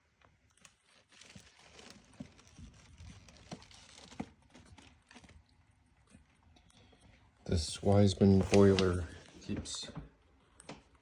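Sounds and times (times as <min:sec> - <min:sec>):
faint rustling: 0:08.2 - 0:10.0.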